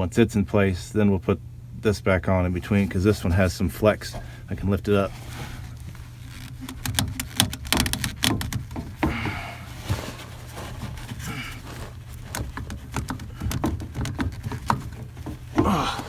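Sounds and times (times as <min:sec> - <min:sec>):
steady low hum: 0:00.0 - 0:16.0
plastic scraping and rubbing: 0:02.6 - 0:16.0
plastic pipe clicks and knocks: 0:06.2 - 0:10.2, 0:10.8 - 0:16.0.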